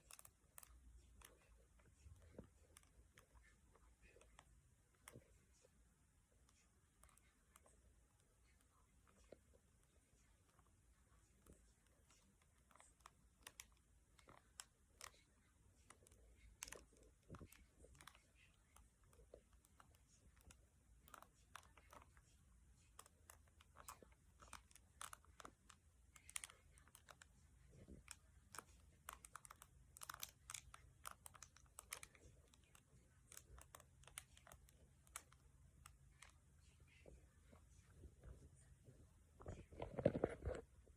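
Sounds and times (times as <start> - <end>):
faint low hum: 0.0 - 40.9
stomach gurgling and popping: 37.9 - 40.9.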